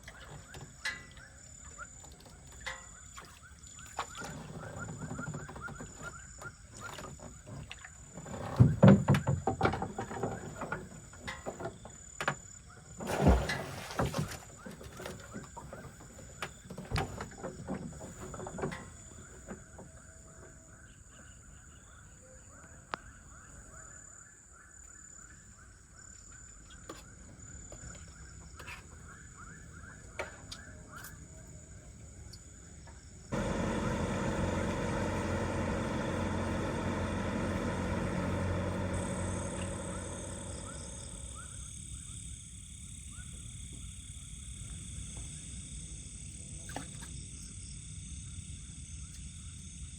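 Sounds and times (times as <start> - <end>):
frogs calling: 33.3 - 42.2.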